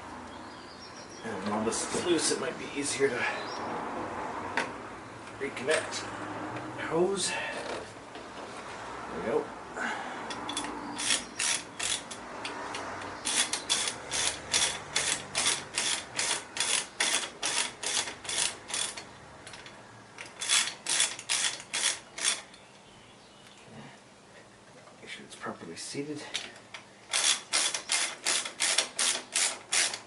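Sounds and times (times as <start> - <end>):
hand ratchet clicking: 10.3 - 22.5, 26.3 - 30.0.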